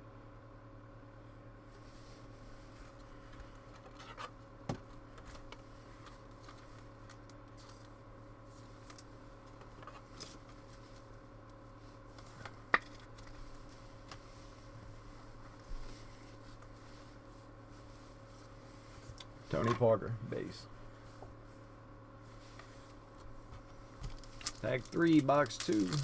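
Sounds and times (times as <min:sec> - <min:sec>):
low steady hum: 0:00.0 - 0:26.0
cards and packaging rustling: 0:24.0 - 0:26.0.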